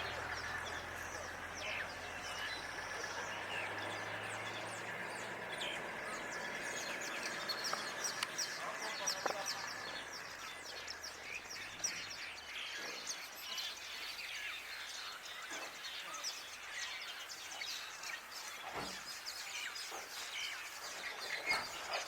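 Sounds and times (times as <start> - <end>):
outdoor background hiss: 0.0 - 22.0
small birds chirping: 0.0 - 22.0.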